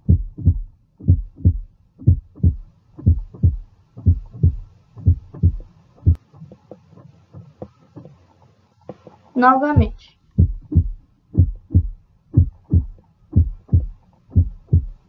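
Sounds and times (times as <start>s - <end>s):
heartbeat through stethoscope: 0.0s - 6.2s, 9.8s - 15.0s.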